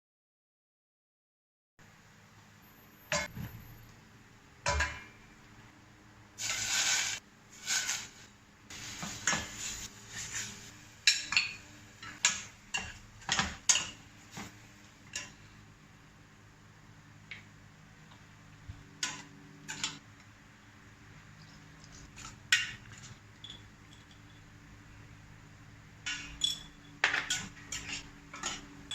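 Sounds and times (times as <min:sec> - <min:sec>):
utensils clinking against dishes: 0:11.0 - 0:14.0, 0:19.0 - 0:20.0, 0:22.2 - 0:24.5, 0:26.0 - 0:28.9.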